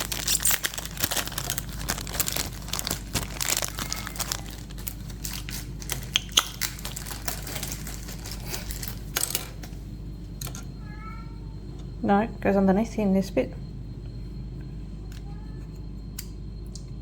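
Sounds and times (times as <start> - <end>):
packaging crinkling: 0.0 - 9.8.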